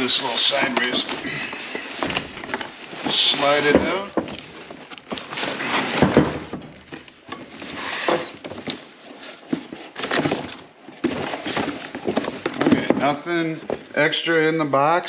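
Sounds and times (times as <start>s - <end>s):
cardboard scraping and rustling: 0.0s - 14.1s
dull knocks and thuds: 9.5s - 13.9s.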